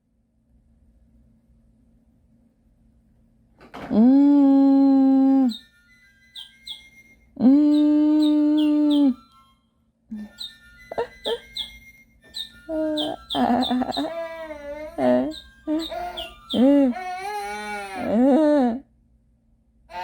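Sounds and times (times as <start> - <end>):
high chirping beeps: 5.5 - 9.6, 10.2 - 14.1, 15.0 - 16.8
baby making held vocal sounds: 12.7 - 18.8.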